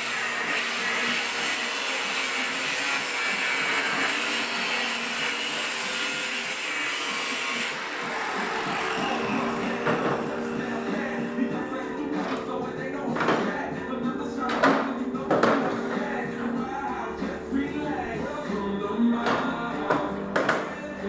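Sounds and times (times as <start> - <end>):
small motor whirring: 3.6 - 10.8.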